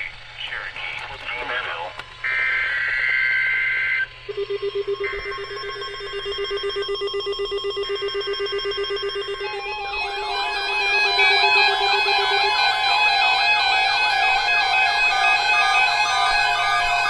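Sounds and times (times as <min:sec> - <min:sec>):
shrill electronic data tones: 0:01.4 - 0:17.0
warbling tone: 0:03.8 - 0:17.0
low pulsing tone: 0:04.1 - 0:17.0.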